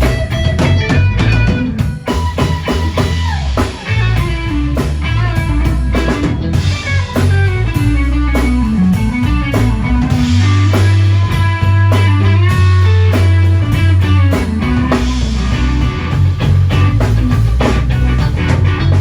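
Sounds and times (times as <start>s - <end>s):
drum kit: 0.0s - 19.0s
electric guitar: 0.0s - 19.0s
heavy bass line: 0.0s - 19.0s.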